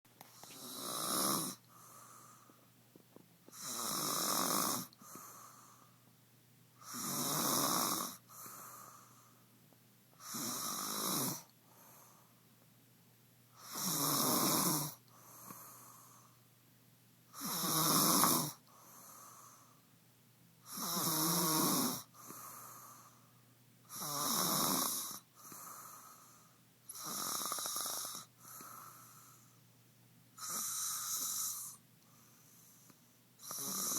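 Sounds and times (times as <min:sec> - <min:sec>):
person snoring: 0:00.4 - 0:02.5, 0:03.5 - 0:05.8, 0:06.8 - 0:09.1, 0:10.2 - 0:11.5, 0:13.6 - 0:15.8, 0:17.4 - 0:18.6, 0:20.7 - 0:23.1, 0:23.9 - 0:26.3, 0:26.9 - 0:29.4, 0:30.4 - 0:31.8, 0:33.4 - 0:33.9.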